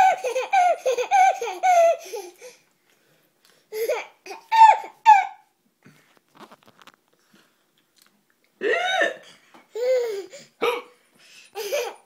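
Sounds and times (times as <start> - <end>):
baby squealing laughs: 0.0 - 2.3, 3.8 - 5.4.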